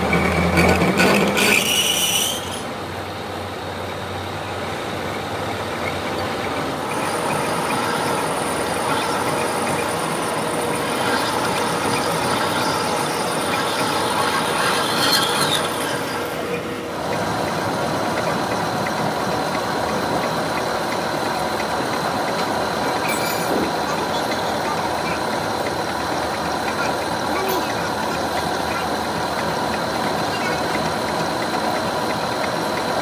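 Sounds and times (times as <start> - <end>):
high-pitched metallic squeal: 0.0 - 2.8, 5.9 - 16.8, 22.3 - 31.1
heavy machinery running: 0.0 - 33.0.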